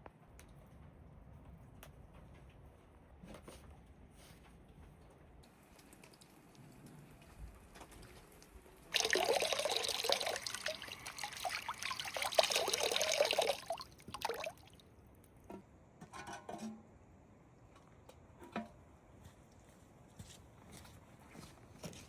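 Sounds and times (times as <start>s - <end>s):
water pouring: 5.6s - 14.9s
water splash: 8.9s - 14.8s.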